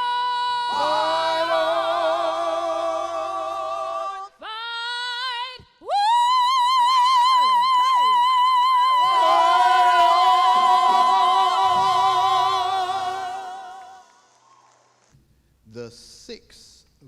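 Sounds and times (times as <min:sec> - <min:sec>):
brief falling cries: 0:09.0 - 0:12.0.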